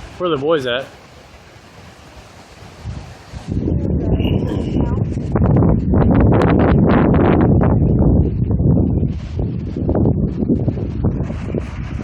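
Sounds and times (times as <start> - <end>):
wind gust buffeting microphone: 0.0 - 12.0
storm wind rushing: 1.3 - 12.0.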